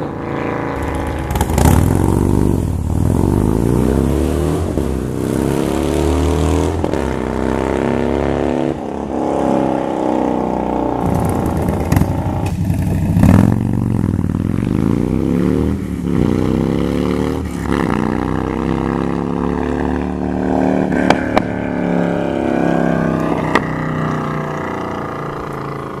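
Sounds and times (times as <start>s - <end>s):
motorcycle engine revving: 0.0s - 26.0s
exhaust cracks: 11.0s - 13.8s.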